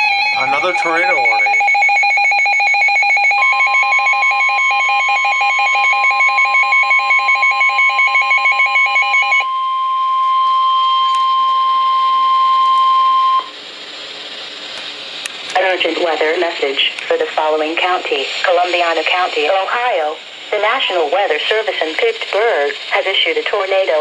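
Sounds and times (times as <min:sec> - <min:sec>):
steady warning alarm tone: 0:00.0 - 0:13.7
fast-pulsing two-pitch beeping: 0:00.2 - 0:04.8.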